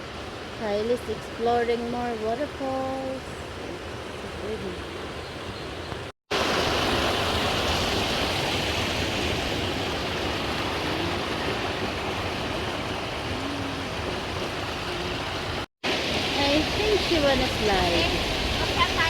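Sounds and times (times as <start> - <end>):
water rushing over rocks: 5.9 - 19.0.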